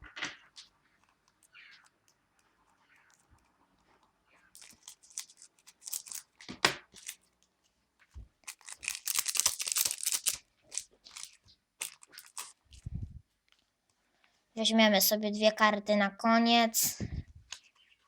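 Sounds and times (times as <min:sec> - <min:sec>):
foil packet tearing and crinkling: 0:04.5 - 0:07.3, 0:08.4 - 0:12.8.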